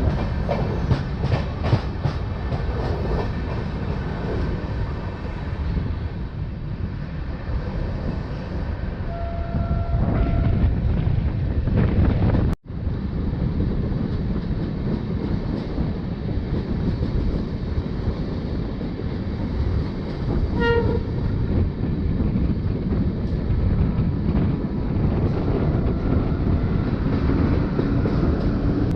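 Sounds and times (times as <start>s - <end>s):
train rolling rumble: 0.0s - 28.9s
train horn: 9.1s - 10.8s, 20.5s - 21.2s.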